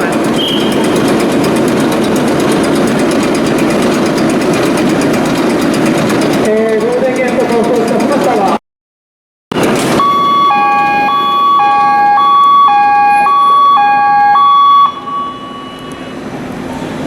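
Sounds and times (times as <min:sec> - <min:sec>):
steady machinery noise: 0:00.0 - 0:08.6, 0:09.5 - 0:14.1
two-tone electronic alarm: 0:09.6 - 0:16.2.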